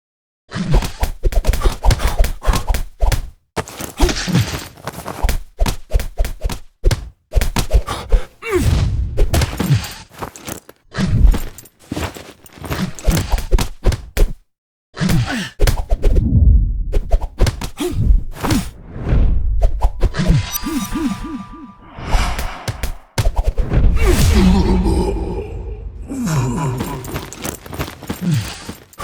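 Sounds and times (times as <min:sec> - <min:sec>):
punches and body hits: 0:00.8 - 0:10.1, 0:12.7 - 0:14.4, 0:15.1 - 0:16.1, 0:17.1 - 0:18.8, 0:22.4 - 0:24.8
men grunting and groaning: 0:08.2 - 0:08.8, 0:15.1 - 0:15.6, 0:20.6 - 0:23.0, 0:23.9 - 0:29.0.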